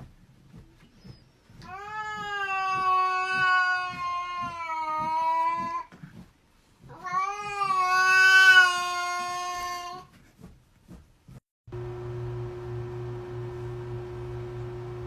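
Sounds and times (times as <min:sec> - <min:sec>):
cat yowling: 0:01.7 - 0:05.8, 0:06.9 - 0:10.0.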